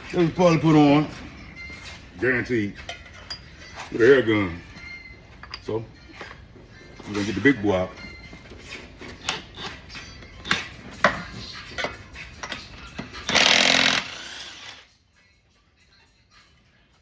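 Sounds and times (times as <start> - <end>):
tools clinking and knocking: 2.7 - 6.4, 7.9 - 14.4
impact wrench hammering: 12.4 - 14.8.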